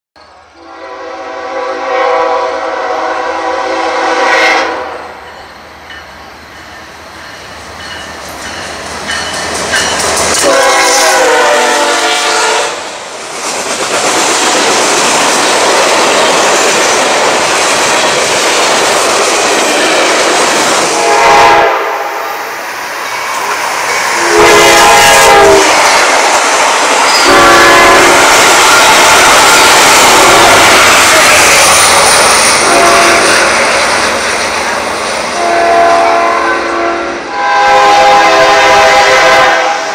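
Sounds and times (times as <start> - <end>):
fast train passing: 0.2 - 39.9
train air horn blasts: 0.6 - 5.3, 10.4 - 12.9, 20.9 - 22.5, 24.1 - 26.0, 27.1 - 29.1, 29.9 - 33.6, 35.3 - 39.9.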